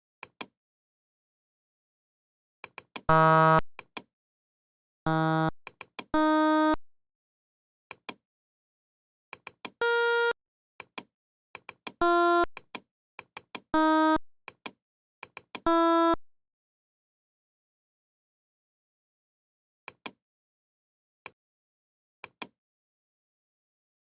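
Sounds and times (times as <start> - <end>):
short electronic tones: 3.1 - 3.6, 5.1 - 5.6, 6.2 - 6.8, 9.8 - 10.4, 13.8 - 14.2.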